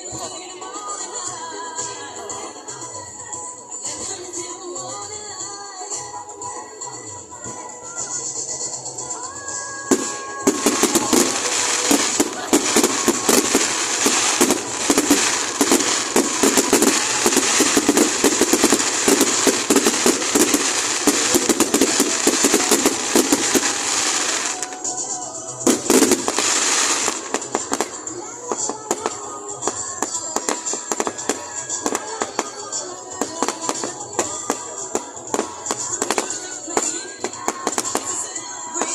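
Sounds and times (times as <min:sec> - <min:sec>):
fireworks crackling bangs: 0:09.8 - 0:38.9.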